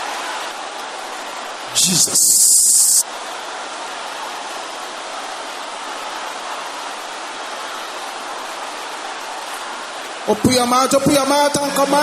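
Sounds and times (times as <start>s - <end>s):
congregation praying aloud: 1.6s - 3.1s, 10.2s - 12.0s.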